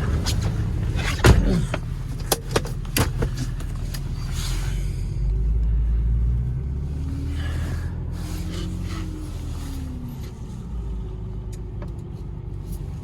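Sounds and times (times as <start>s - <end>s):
car engine running: 0.0s - 13.0s
sharp clicks and knocks: 0.2s - 4.1s.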